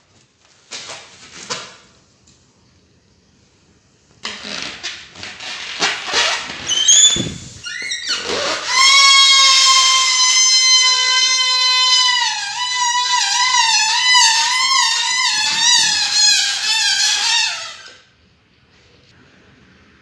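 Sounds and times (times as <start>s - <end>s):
rubber balloon squeaking: 4.2s - 18.0s
balloon squealing tone: 4.3s - 18.0s.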